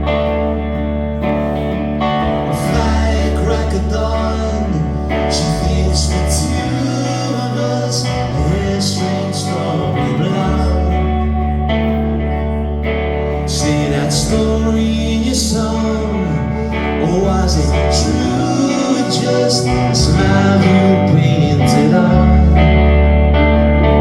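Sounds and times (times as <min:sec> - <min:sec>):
bass line: 0:00.0 - 0:24.0
guitar chords: 0:00.0 - 0:24.0.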